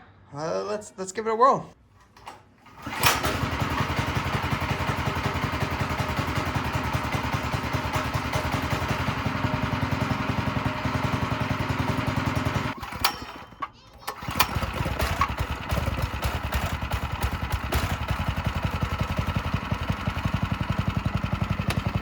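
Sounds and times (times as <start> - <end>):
mini bike engine running: 2.7 - 22.0.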